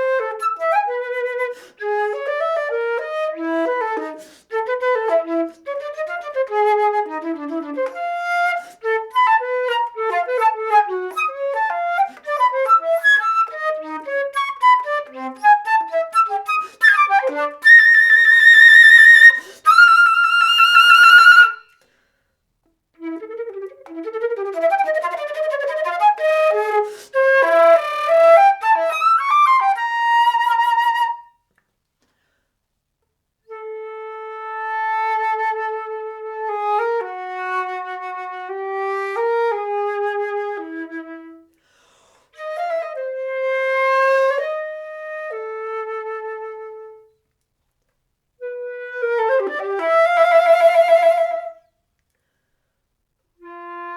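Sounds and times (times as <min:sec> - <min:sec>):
solo flute playing: 0:00.0 - 0:21.8, 0:23.0 - 0:31.4, 0:33.4 - 0:41.6, 0:42.4 - 0:47.2, 0:48.4 - 0:51.8, 0:53.4 - 0:53.9.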